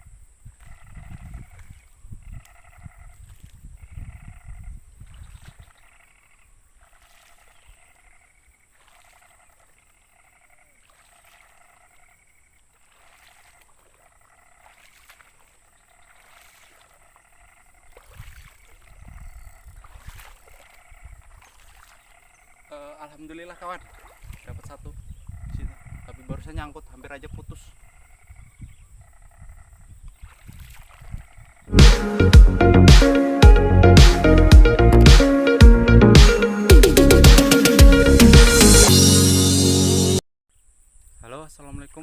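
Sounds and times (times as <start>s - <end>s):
frogs calling: 0.0s - 31.8s.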